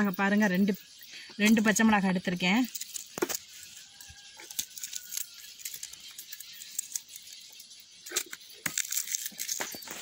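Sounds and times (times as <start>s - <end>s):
ingredients clicking and rattling: 0.0s - 10.0s.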